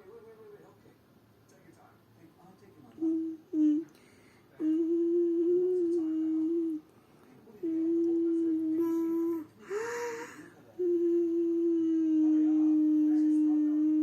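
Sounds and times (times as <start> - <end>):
person humming: 3.0 - 4.0, 4.6 - 6.8, 7.6 - 14.0.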